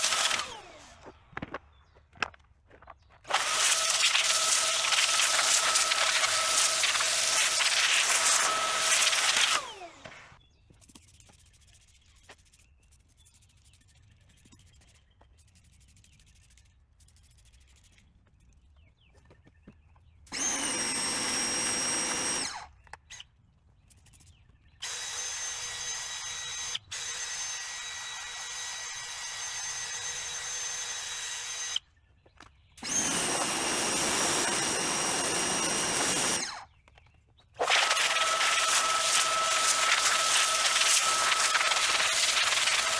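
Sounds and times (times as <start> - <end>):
power tool motor whining: 0.0 - 1.5, 3.3 - 10.4, 20.3 - 23.2, 24.8 - 31.8, 32.8 - 36.8, 37.6 - 42.9.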